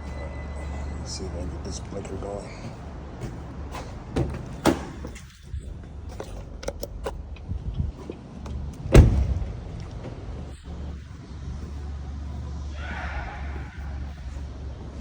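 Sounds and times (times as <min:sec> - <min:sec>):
low rumble: 0:05.4 - 0:15.0
loud thump: 0:08.9 - 0:09.6.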